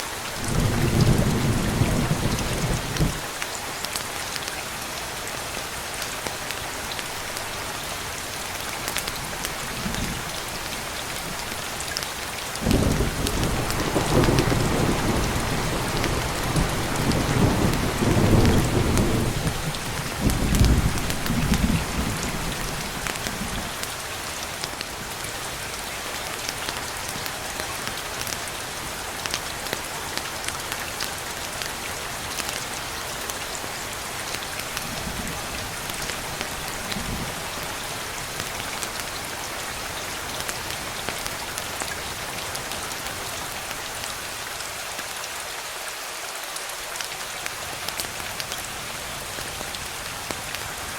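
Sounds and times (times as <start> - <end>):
heavy rain: 0.0 - 50.9
rolling thunder rumble: 12.6 - 23.6.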